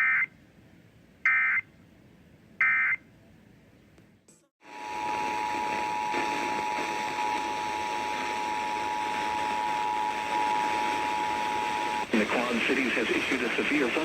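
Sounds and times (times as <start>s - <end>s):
radio hiss: 4.7s - 14.0s.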